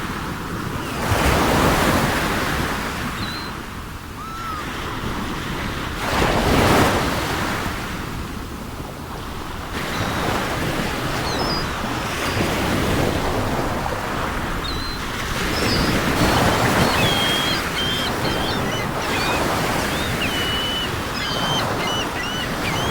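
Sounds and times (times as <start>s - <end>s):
surf breaking on shore: 9.2s - 22.9s
gulls calling faintly: 9.8s - 22.9s.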